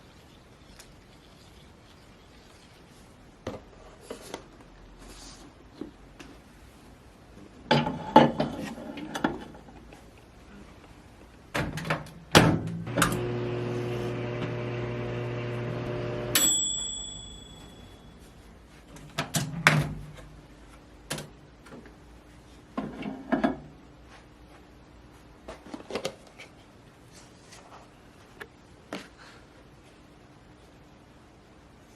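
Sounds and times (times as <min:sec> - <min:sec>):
microwave oven humming: 0:12.8 - 0:18.2
microwave beep: 0:14.3 - 0:18.2.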